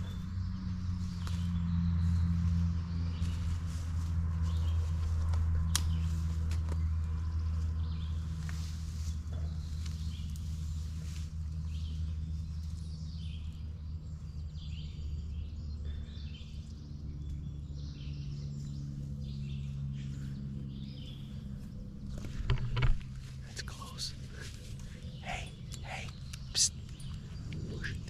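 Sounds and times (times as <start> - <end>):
songbirds chirping: 0.0 - 28.0
steady low hum: 0.0 - 28.0.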